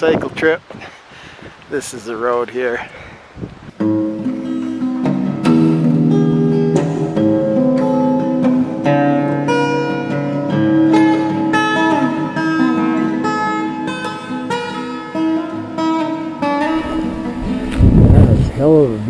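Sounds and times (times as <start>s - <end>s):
strummed acoustic guitar: 3.8s - 19.0s.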